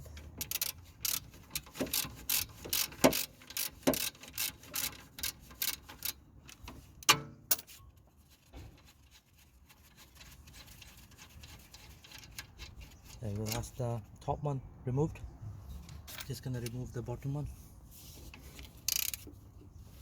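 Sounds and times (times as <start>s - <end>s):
socket ratchet clicking: 18.9s - 19.3s.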